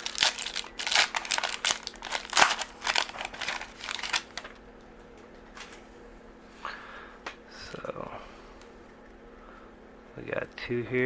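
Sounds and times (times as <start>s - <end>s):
wrapper crinkling and rustling: 0.0s - 4.6s.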